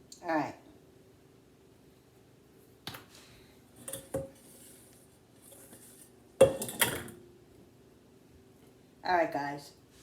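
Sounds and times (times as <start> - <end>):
dishes clattering: 3.8 - 4.7, 5.5 - 7.2.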